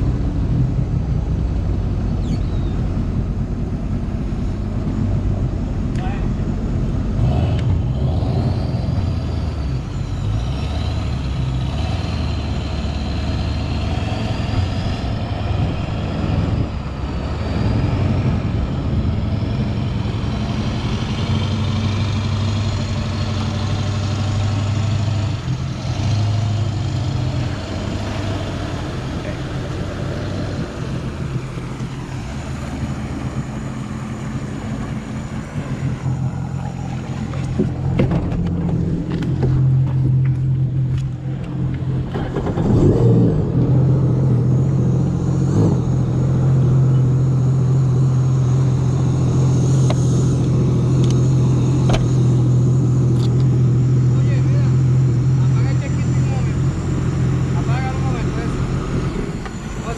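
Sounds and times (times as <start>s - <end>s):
jet ski engine: 18.2s - 59.9s.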